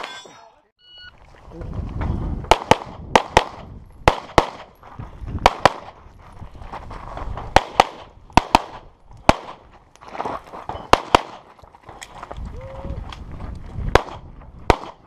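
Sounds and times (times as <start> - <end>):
pistol shots with echo: 2.5 - 4.7, 10.9 - 11.4, 14.0 - 15.0.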